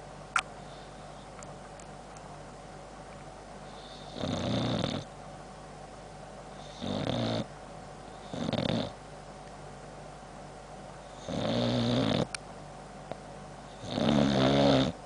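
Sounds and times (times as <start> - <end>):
dog snoring: 3.6 - 5.1, 6.5 - 7.5, 8.1 - 9.0, 11.1 - 12.4, 13.7 - 15.0.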